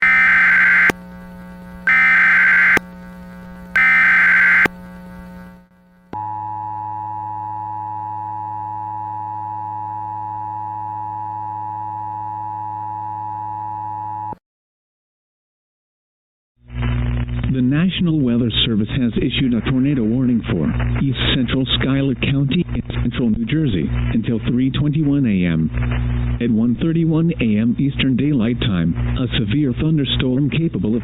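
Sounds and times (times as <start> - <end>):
buzzing data tone bursts: 0.0 - 1.0, 1.8 - 2.8, 3.7 - 4.7.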